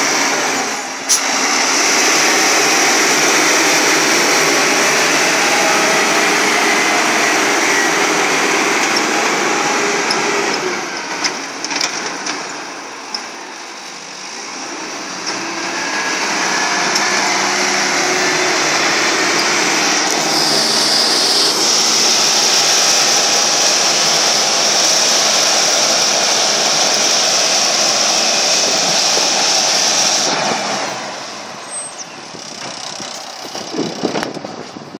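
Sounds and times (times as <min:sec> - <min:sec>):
excavator engine running: 0:00.0 - 0:35.0.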